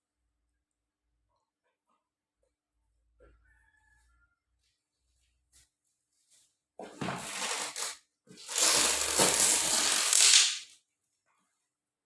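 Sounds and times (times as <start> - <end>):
packaging tearing: 7.2 - 10.7.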